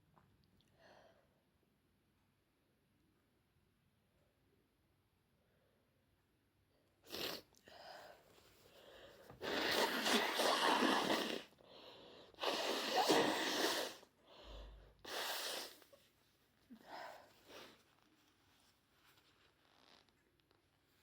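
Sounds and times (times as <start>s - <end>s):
person sneezing: 9.4s - 11.5s, 12.4s - 14.0s.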